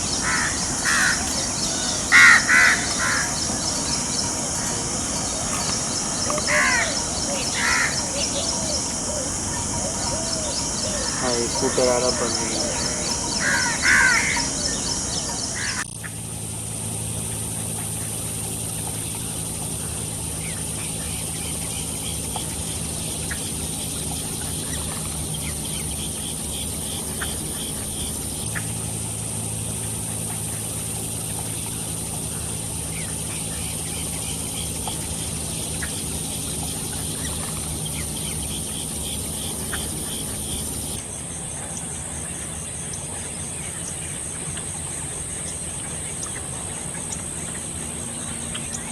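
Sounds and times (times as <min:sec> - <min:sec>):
poultry calling: 0:00.0 - 0:15.8
faint chirps: 0:00.0 - 0:15.9
steady high whine: 0:00.0 - 0:48.9
steady low hum: 0:00.0 - 0:48.9.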